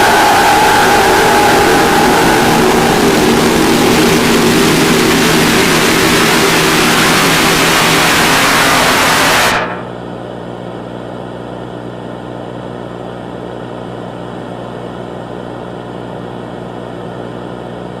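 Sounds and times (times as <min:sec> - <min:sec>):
steady low hum: 0:00.0 - 0:11.1.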